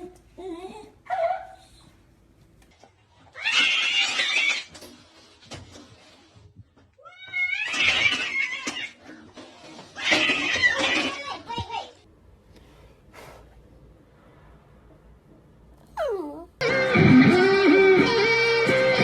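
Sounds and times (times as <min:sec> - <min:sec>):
pet animal rough cries: 0:03.3 - 0:04.7, 0:15.8 - 0:16.6.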